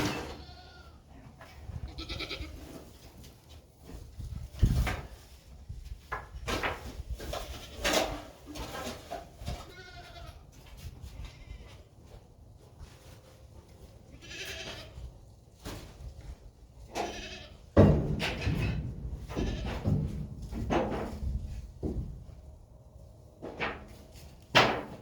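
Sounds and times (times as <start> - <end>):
goats bleating: 0.0 - 1.1, 1.8 - 2.6, 9.6 - 10.4, 14.1 - 15.0, 17.0 - 17.6.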